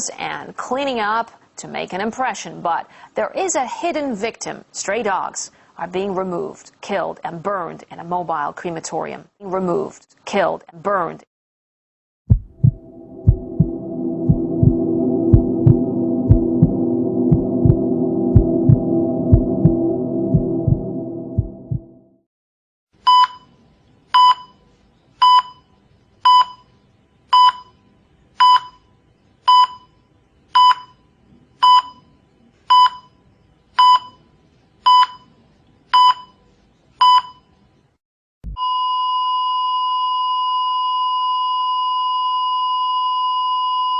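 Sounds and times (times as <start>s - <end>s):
heart monitor short beeps: 23.1s - 23.5s, 24.2s - 24.6s, 25.2s - 25.7s, 26.3s - 26.6s, 27.4s - 27.7s, 28.4s - 28.8s, 29.5s - 29.9s, 30.6s - 31.0s, 31.6s - 32.0s, 32.7s - 33.1s, 33.8s - 34.2s, 34.9s - 35.3s, 36.0s - 36.4s, 37.0s - 37.5s, 38.5s - 43.9s.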